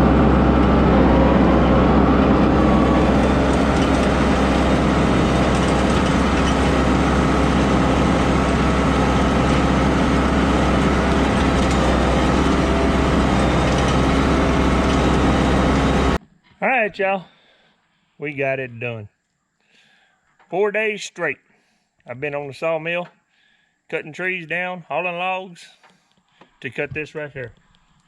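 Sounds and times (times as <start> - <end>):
engine running steadily: 0.0 - 16.2
low hum: 0.0 - 16.2.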